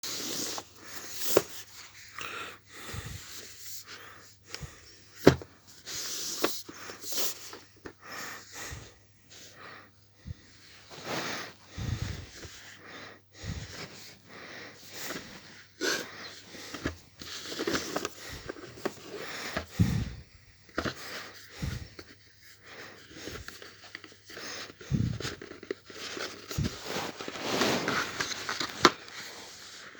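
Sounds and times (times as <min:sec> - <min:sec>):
packaging rustling and clicking: 0:16.0 - 0:19.7, 0:23.0 - 0:29.3.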